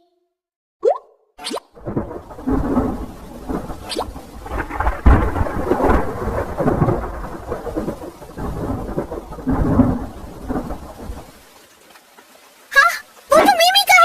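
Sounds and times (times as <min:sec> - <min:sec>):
rain: 0:01.6 - 0:14.0
thunder rumbling: 0:01.8 - 0:11.5.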